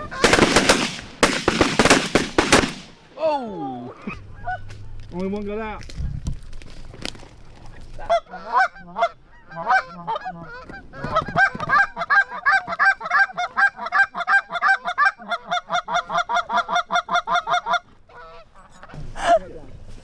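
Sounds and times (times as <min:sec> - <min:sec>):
goose call clucks: 0:08.1 - 0:19.0.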